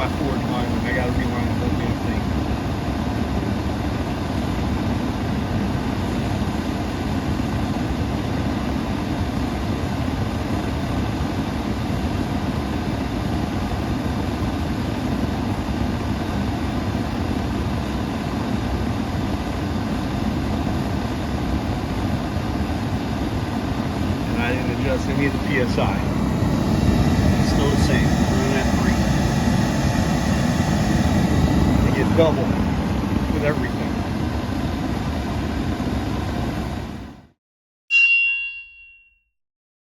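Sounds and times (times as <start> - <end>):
gas forge roaring: 11.4 - 37.2.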